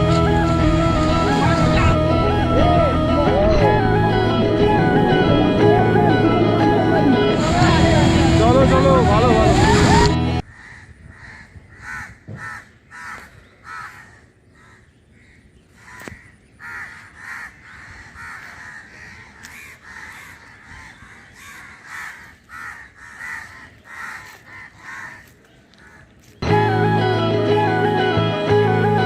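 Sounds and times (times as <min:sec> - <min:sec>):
crows cawing: 0:10.4 - 0:26.3.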